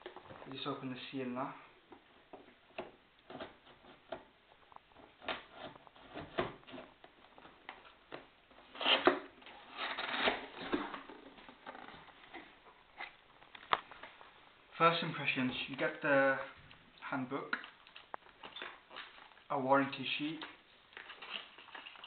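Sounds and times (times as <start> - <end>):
cardboard packaging rustling: 3.5 - 14.4, 20.9 - 22.0.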